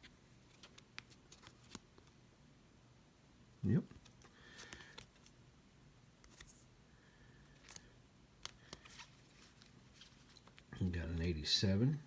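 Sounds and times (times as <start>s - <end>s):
cards clicking and sliding: 0.4s - 2.1s, 4.0s - 5.4s, 6.2s - 6.7s, 7.6s - 10.7s.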